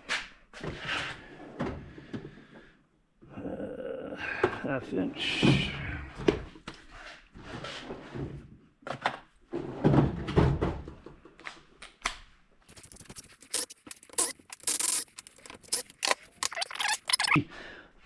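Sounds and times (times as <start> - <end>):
sharp metallic clicks: 12.7 - 17.4.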